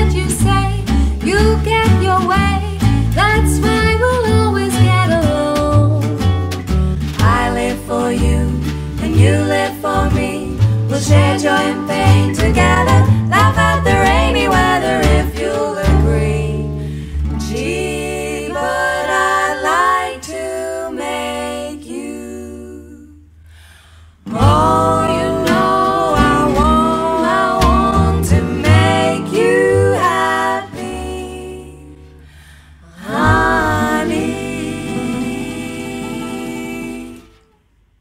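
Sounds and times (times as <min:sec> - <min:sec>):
singing with guitar: 0:00.0 - 0:23.3, 0:24.2 - 0:37.6.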